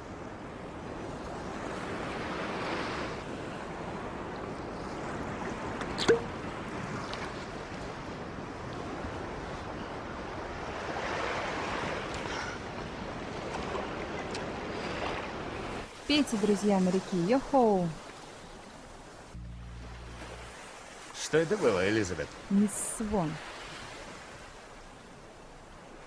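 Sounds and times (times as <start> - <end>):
surf washing onto beach: 17.8 - 24.7.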